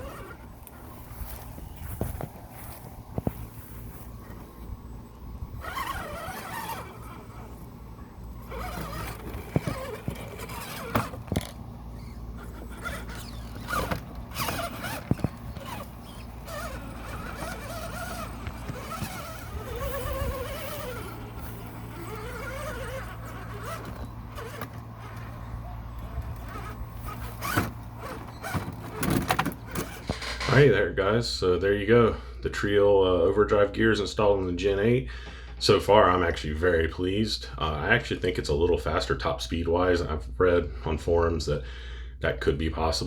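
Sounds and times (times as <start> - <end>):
electric motor whining: 0.0 - 30.5.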